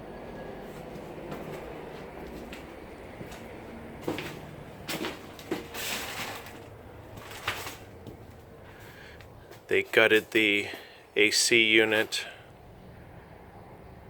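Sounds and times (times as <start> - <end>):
low steady hum: 0.0 - 14.0
knocks and clunks: 2.5 - 8.3
scraping or rustling: 4.0 - 8.2.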